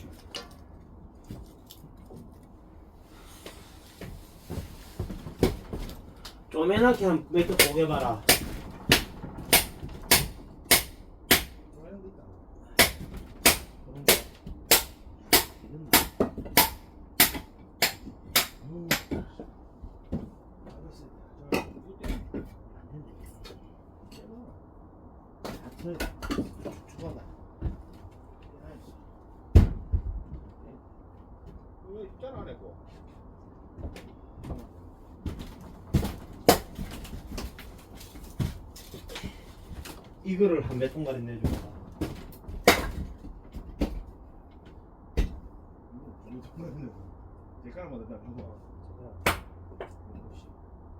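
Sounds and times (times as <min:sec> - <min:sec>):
firewood knocking and clunking: 0:04.0 - 0:11.6, 0:12.7 - 0:20.8, 0:21.5 - 0:22.6, 0:25.4 - 0:28.5, 0:29.4 - 0:31.6, 0:33.7 - 0:45.5
axe chopping kindling: 0:07.4 - 0:11.6, 0:12.8 - 0:19.3, 0:35.9 - 0:37.0, 0:42.6 - 0:43.1, 0:49.2 - 0:49.5.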